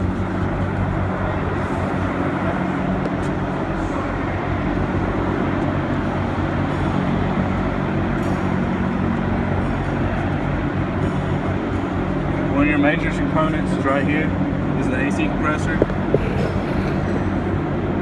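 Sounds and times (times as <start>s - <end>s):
diesel engine idling: 0.0s - 18.0s.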